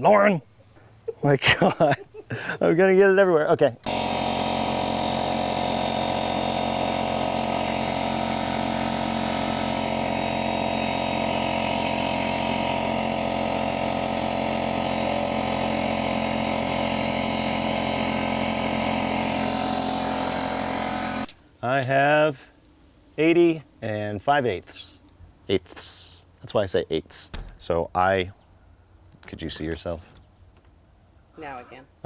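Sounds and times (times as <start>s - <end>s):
motor droning steadily: 3.8s - 21.3s.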